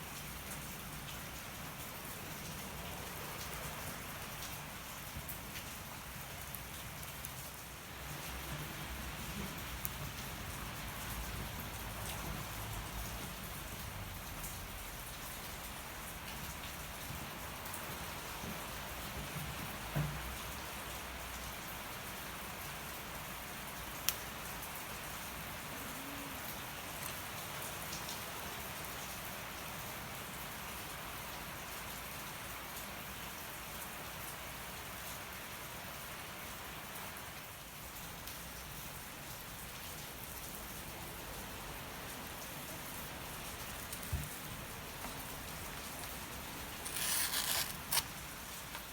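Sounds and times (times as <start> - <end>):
steady rain falling: 0.0 - 48.9
campfire crackling: 43.6 - 48.9.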